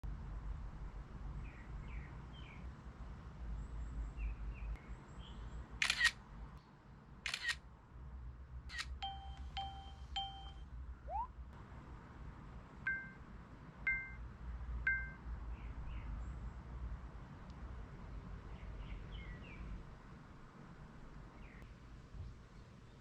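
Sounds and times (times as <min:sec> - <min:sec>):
camera shutter clicks: 0:05.8 - 0:06.2, 0:07.3 - 0:07.6, 0:08.7 - 0:09.0
quick electronic beeps: 0:08.7 - 0:11.3
low steady hum: 0:08.7 - 0:15.3.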